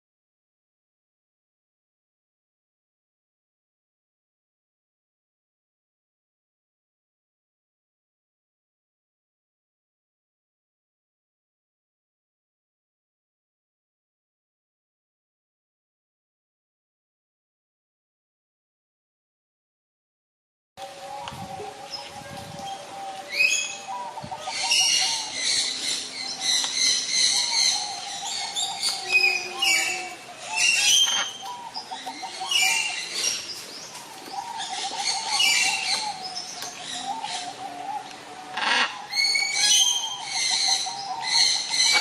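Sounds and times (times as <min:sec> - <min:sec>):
parrots chirping and squawking: 0:23.3 - 0:33.5, 0:34.2 - 0:37.4, 0:38.5 - 0:42.0.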